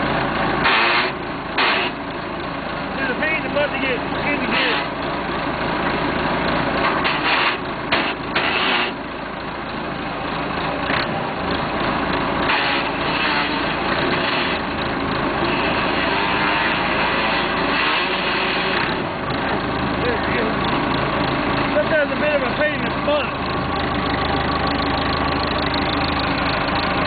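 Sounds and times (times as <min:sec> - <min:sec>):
diesel engine running: 0:00.0 - 0:27.0
transmission gears scraping: 0:00.6 - 0:02.2, 0:02.9 - 0:05.2, 0:06.6 - 0:09.0, 0:12.4 - 0:27.0.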